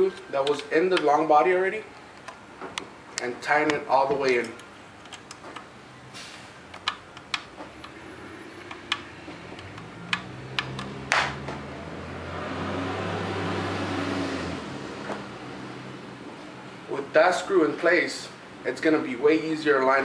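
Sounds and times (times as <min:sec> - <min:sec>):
screw clicking and tapping: 0:06.7 - 0:08.0, 0:08.6 - 0:11.0.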